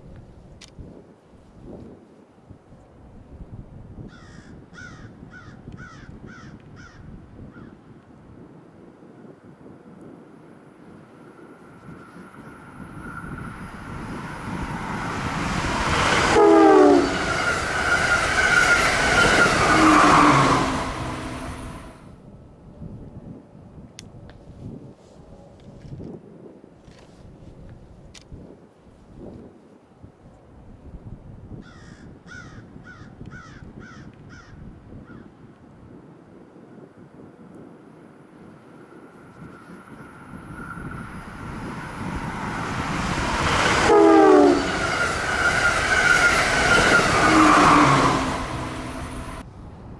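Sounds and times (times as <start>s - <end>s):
train passing at speed: 9.2s - 22.2s, 37.2s - 49.9s
train horn blast: 12.8s - 22.0s, 39.9s - 49.4s.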